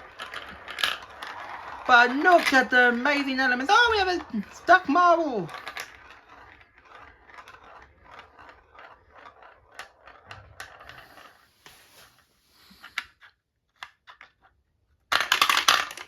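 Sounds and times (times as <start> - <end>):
marbles clicking on track: 0.0 - 11.3, 15.1 - 16.0.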